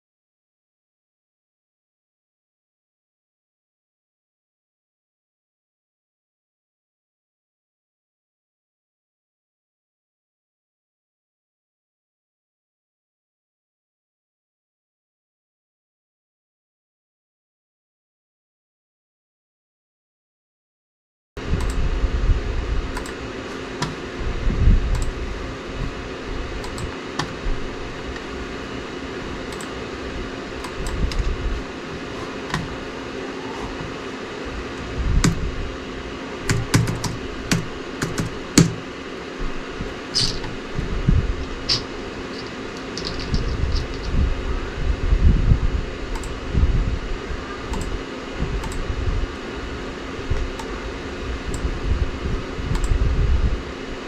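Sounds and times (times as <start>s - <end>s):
fan hum: 21.4s - 54.0s
keyboard typing and clicks: 23.0s - 23.2s, 25.0s - 25.2s, 26.6s - 27.4s, 29.5s - 29.8s, 30.6s - 31.2s, 36.5s - 38.8s, 46.2s - 46.4s, 47.7s - 48.0s, 48.6s - 48.8s, 50.6s - 50.8s.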